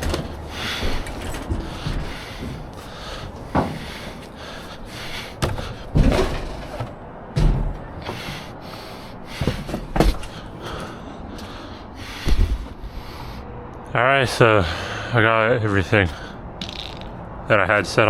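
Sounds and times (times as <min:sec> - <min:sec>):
scrap dropping with heavy thuds: 0:05.4 - 0:08.2.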